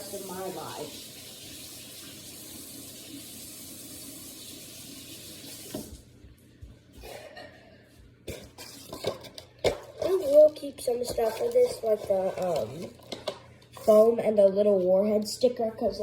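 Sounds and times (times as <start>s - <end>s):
water running from a tap: 0.0s - 6.0s.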